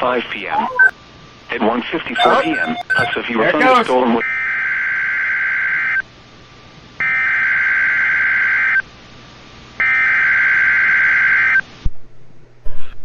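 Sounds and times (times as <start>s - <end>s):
buzzing data bursts: 2.2s - 3.9s.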